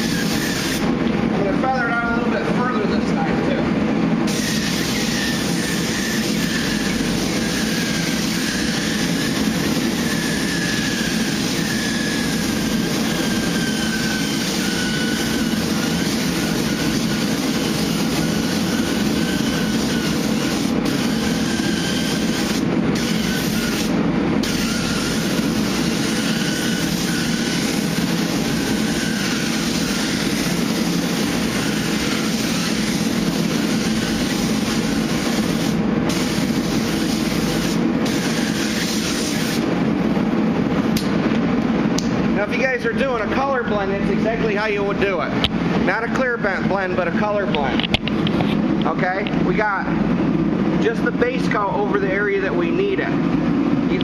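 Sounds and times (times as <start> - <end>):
constant hum: 0.0 - 54.0
paint spray gun hissing: 4.3 - 10.4, 26.8 - 39.6.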